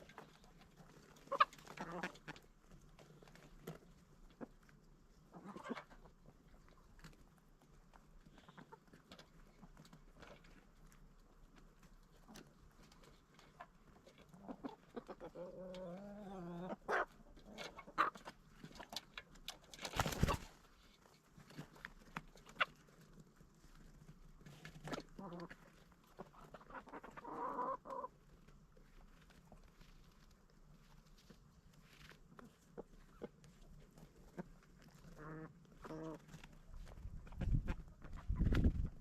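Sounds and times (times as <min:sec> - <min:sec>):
chickens clucking and calling: 0:00.0 - 0:20.8, 0:21.6 - 0:39.0.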